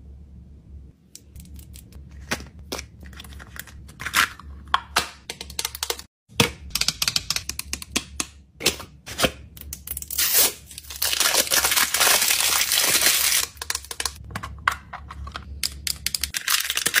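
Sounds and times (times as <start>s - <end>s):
packaging crinkling: 9.9s - 14.2s, 16.3s - 17.0s
packaging tearing: 9.9s - 14.2s, 16.3s - 17.0s.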